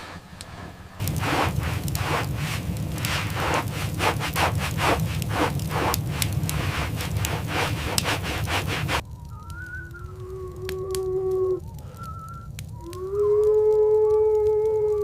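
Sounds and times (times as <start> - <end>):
rhythmic scraping strokes: 0.0 - 9.0
steady low rumble: 0.0 - 13.4.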